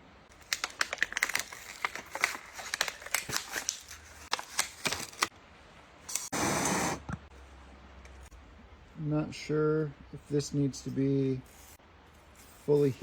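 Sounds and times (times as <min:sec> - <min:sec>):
burst of hiss: 0:06.2 - 0:07.1.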